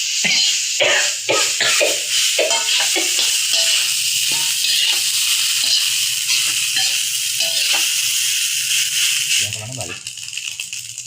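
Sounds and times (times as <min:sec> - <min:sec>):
rice sizzling in a pan: 0:00.0 - 0:11.0
spatula scraping pan: 0:01.4 - 0:08.0.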